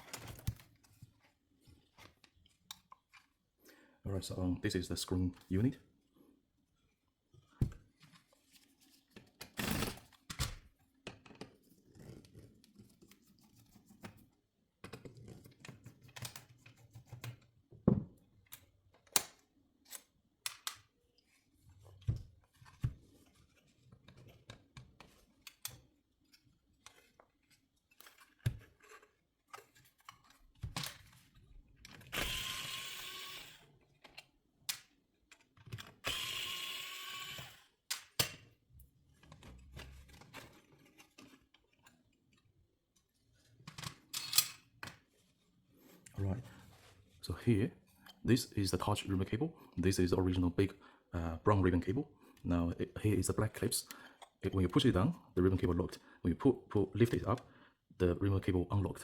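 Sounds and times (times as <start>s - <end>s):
plastic parts clicking and knocking: 9.1s - 13.2s, 14.8s - 21.0s, 21.9s - 32.4s, 33.7s - 36.3s, 37.3s - 45.2s.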